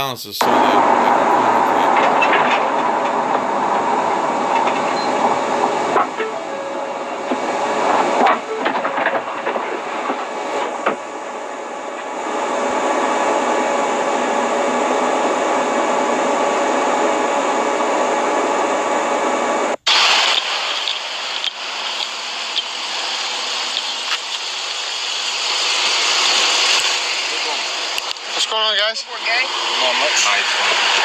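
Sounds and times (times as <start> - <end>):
static hiss: 19.7 - 31.0.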